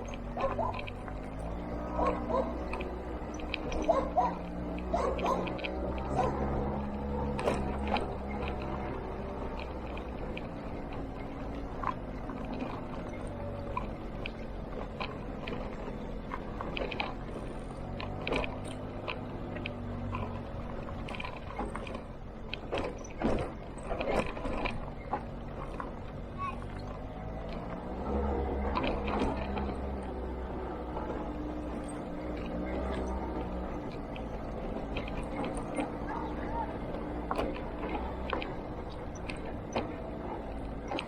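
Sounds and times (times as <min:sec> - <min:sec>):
scooter engine running: 0:00.0 - 0:41.0.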